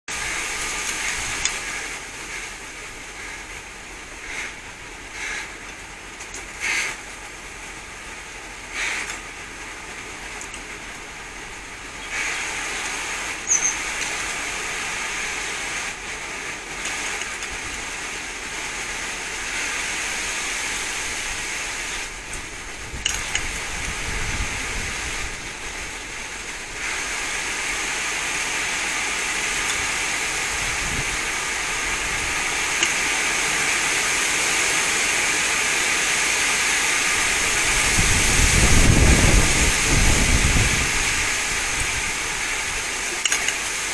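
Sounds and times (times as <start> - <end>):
wind rustling leaves: 0.1 - 43.9
wind buffeting microphone: 19.3 - 27.8, 29.4 - 33.1, 37.0 - 43.0.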